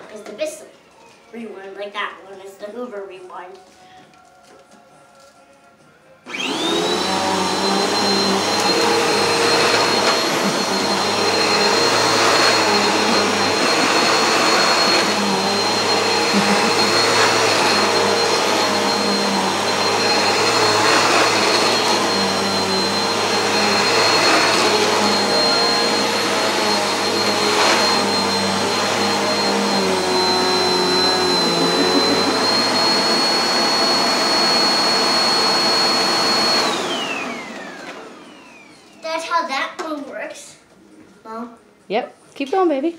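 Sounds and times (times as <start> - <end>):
vacuum cleaner motor whine: 6.2 - 39.1.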